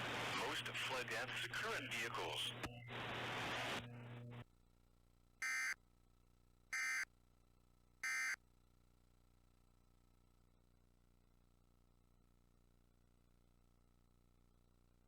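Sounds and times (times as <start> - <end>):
broadcast audio: 0.0 - 4.4.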